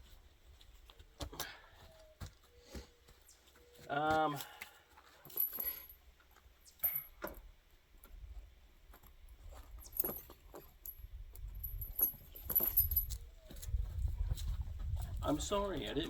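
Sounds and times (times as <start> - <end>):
metal tire chain clinking: 5.3 - 6.0, 6.8 - 7.3, 9.8 - 13.2.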